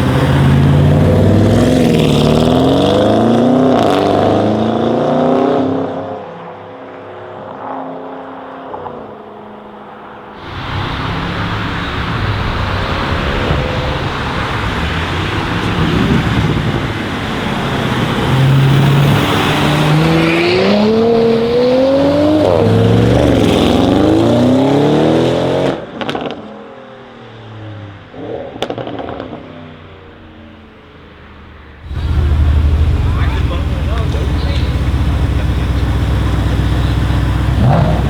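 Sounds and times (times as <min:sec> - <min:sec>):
car engine accelerating hard: 0:00.0 - 0:06.3, 0:10.4 - 0:26.4, 0:31.8 - 0:38.0
exhaust pops: 0:31.8 - 0:38.0.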